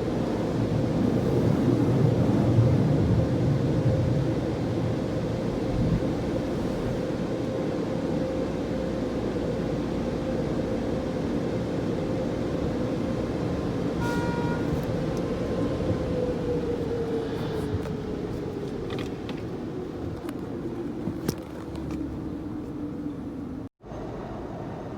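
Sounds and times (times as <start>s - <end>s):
short beep: 14.0s - 14.9s.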